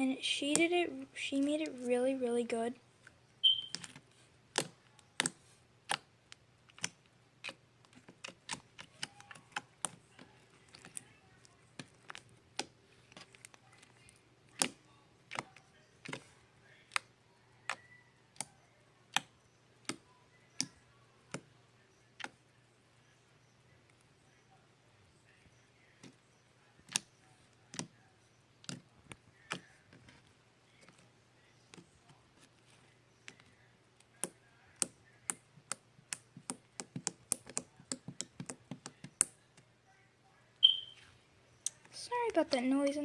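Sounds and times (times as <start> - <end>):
slime clicking and popping: 3.4 - 10.0, 14.5 - 16.2.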